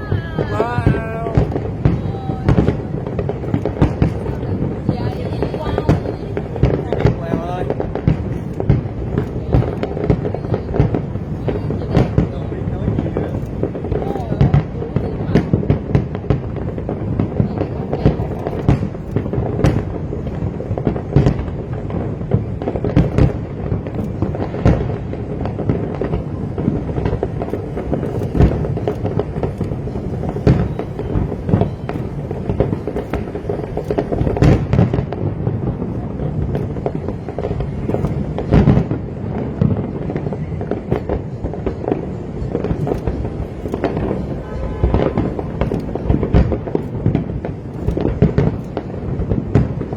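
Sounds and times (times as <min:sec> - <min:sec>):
fireworks bangs and cracks: 0:00.0 - 0:49.9
rumble of fireworks bursts: 0:00.0 - 0:49.9.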